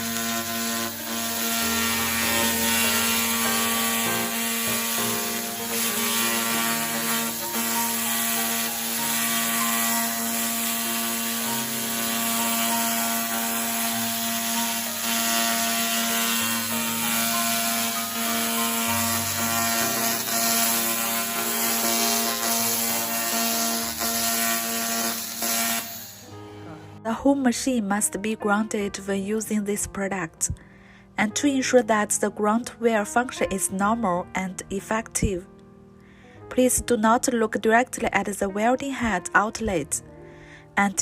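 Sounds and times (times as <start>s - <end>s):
laser cleaning gun buzzing hiss: 0.0s - 26.4s.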